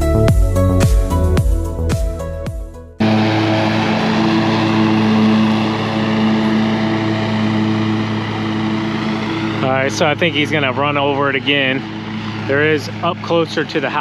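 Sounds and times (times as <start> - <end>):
background music: 0.0 - 14.0
lawn mower engine running: 3.0 - 14.0.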